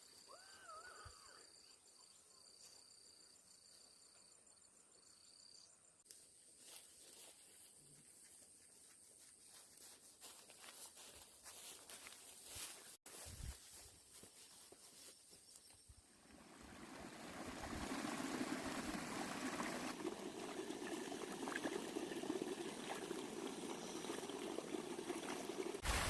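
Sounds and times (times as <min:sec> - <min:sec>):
faint insect chirping: 0:00.0 - 0:10.7, 0:13.2 - 0:16.5.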